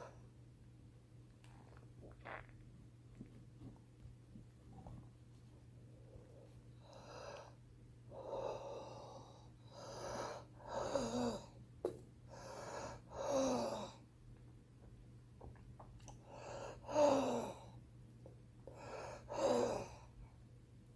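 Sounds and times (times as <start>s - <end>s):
raspy wheezy breathing: 6.8s - 11.5s.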